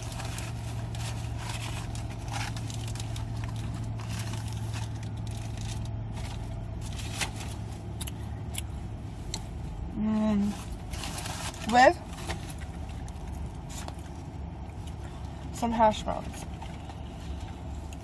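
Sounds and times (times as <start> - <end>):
packaging crinkling: 0.0 - 7.7
car cabin hum: 0.0 - 18.0.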